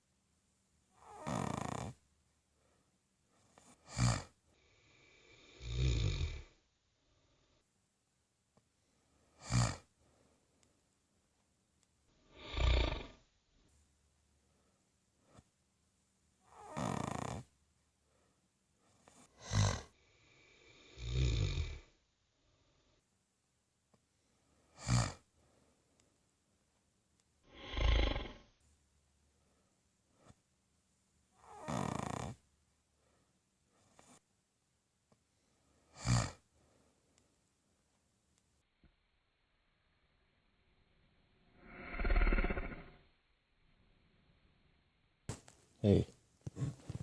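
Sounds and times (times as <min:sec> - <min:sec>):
woman snoring: 0:01.0 - 0:02.0, 0:03.6 - 0:06.6, 0:09.4 - 0:09.9, 0:12.2 - 0:13.2, 0:16.4 - 0:17.5, 0:19.0 - 0:22.0, 0:24.7 - 0:25.3, 0:27.5 - 0:28.5, 0:31.4 - 0:32.4, 0:35.9 - 0:36.4, 0:41.5 - 0:43.0.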